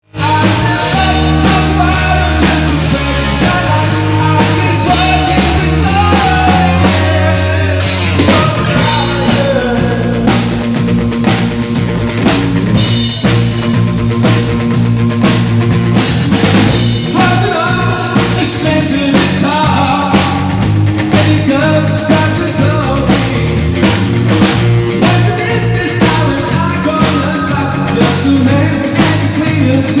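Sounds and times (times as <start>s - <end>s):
drums: 0.0s - 30.0s
heavy bass: 0.0s - 30.0s
rock band playing live: 0.0s - 30.0s
singer: 0.1s - 10.6s, 17.0s - 23.8s, 25.0s - 30.0s.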